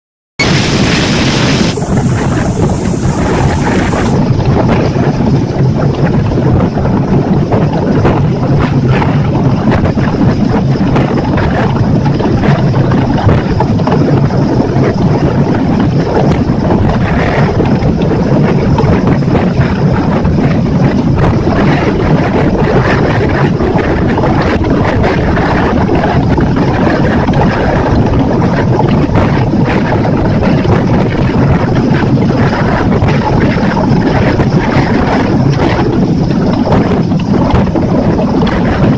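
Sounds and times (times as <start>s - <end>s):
water rushing past hull: 0.4s - 13.8s
outboard motor drone: 0.4s - 38.9s
wind buffeting microphone: 0.4s - 38.9s.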